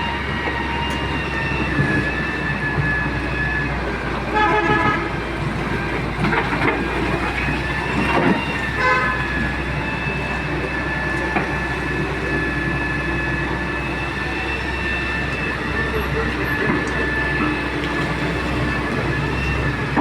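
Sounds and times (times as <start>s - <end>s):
excavator engine drone: 0.0s - 20.0s
vehicle horn toot: 4.3s - 5.2s, 8.8s - 9.4s.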